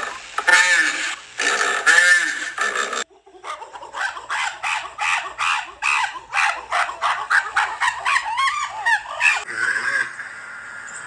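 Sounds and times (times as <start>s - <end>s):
fowl calling: 0.4s - 10.1s.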